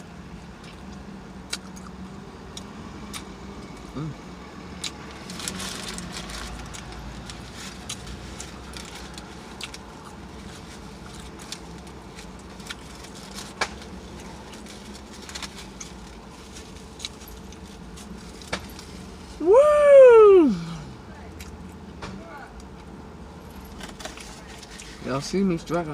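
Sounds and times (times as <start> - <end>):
low steady hum: 0.0 - 25.9
mouth smacking and chewing: 0.6 - 3.3.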